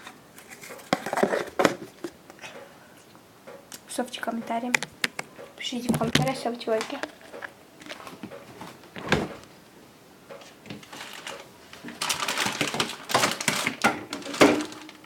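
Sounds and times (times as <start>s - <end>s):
rapid handling clicks and taps: 3.5s - 5.3s.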